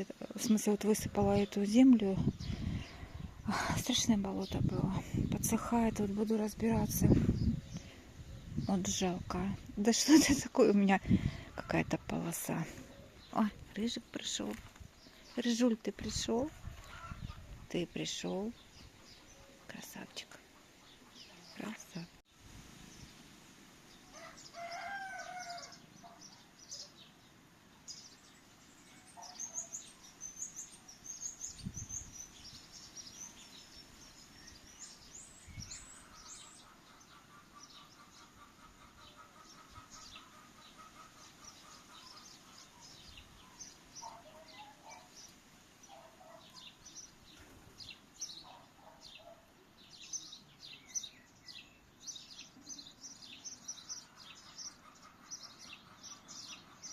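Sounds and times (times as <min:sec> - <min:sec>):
small birds chirping: 0:00.0 - 0:56.9
lower bird calls: 0:23.9 - 0:56.9.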